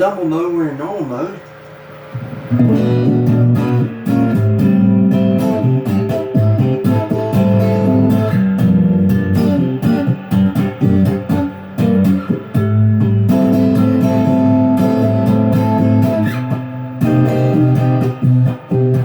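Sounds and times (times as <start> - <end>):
overdriven electric guitar: 1.6 - 19.0.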